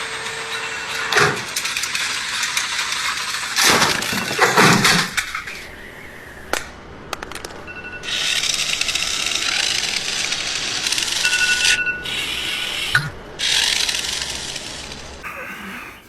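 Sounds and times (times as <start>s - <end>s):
alarm clock ringing: 0.0s - 3.5s, 7.6s - 15.0s.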